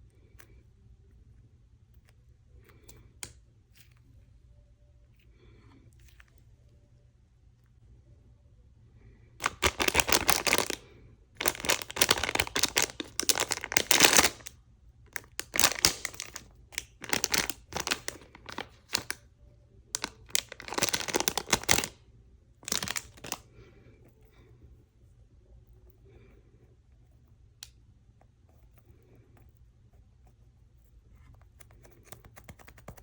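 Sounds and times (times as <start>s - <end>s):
packaging crinkled and torn: 9.4s - 10.8s, 11.4s - 14.5s, 15.1s - 19.2s, 20.0s - 22.0s, 22.6s - 23.4s.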